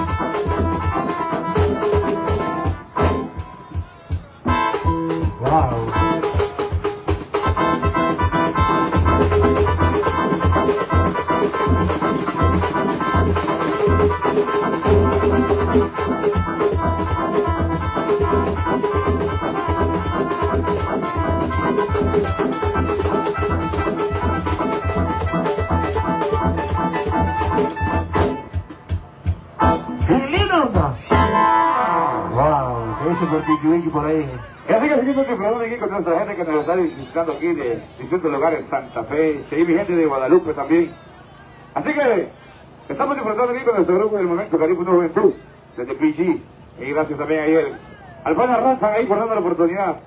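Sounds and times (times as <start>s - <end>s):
band music with bass beat: 0.0s - 31.8s.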